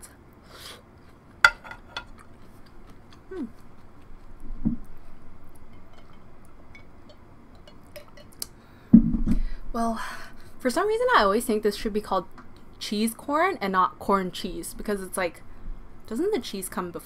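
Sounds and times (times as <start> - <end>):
eating sounds: 2.1 - 6.6
utensil clinking on dish: 5.7 - 8.4.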